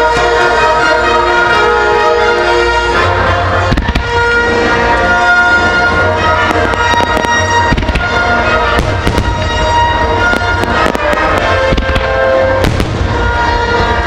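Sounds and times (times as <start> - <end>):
fireworks bangs and crackles: 0.0 - 14.0
music playing: 0.0 - 14.0
low rumble: 5.9 - 14.0.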